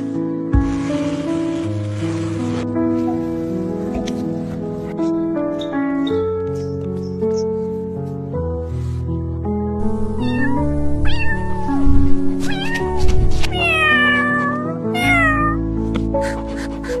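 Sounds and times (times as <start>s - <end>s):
background music: 0.0s - 17.0s
cat meowing: 9.8s - 15.7s.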